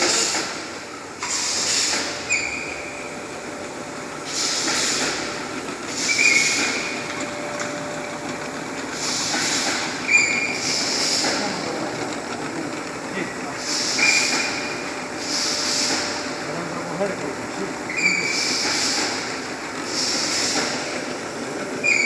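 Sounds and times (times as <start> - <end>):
pneumatic valve air hiss: 0.0 - 2.7, 4.2 - 7.0, 9.0 - 11.5, 13.6 - 16.4, 17.9 - 21.0.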